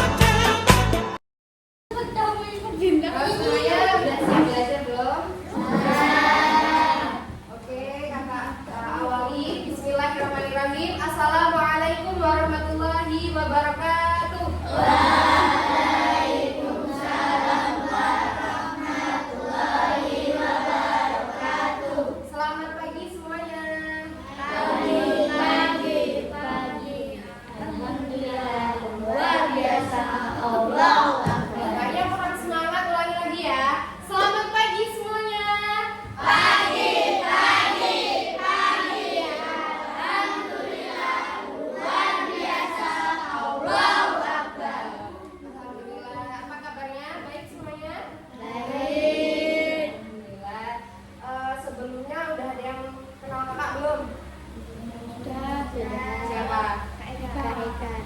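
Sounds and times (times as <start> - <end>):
children chanting in unison: 5.5 - 7.3, 14.6 - 22.4, 24.2 - 32.0, 36.1 - 46.0, 48.3 - 50.1.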